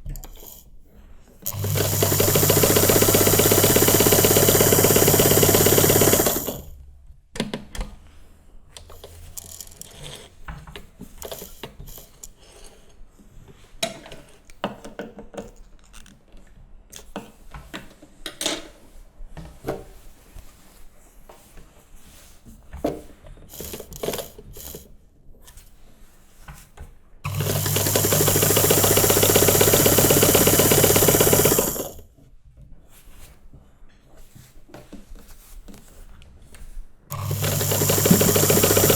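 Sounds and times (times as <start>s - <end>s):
electric sewing machine stitching: 0.2s - 0.6s, 1.4s - 6.8s, 11.2s - 12.2s, 23.5s - 24.9s, 27.3s - 32.1s, 37.1s - 38.9s.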